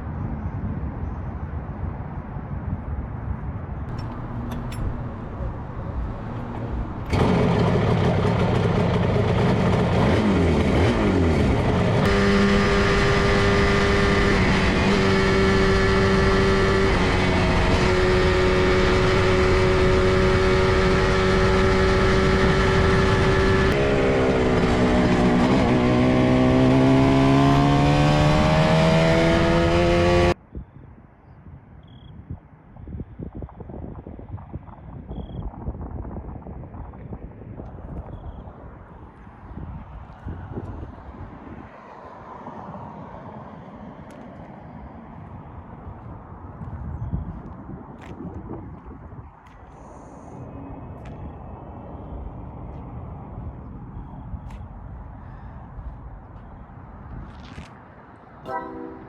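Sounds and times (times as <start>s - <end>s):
two-stroke motorcycle engine running: 3.9s - 30.3s.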